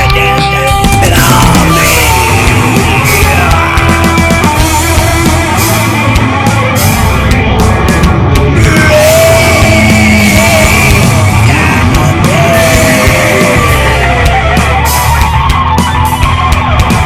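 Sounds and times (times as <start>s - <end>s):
heavy rock music: 0.0s - 17.0s.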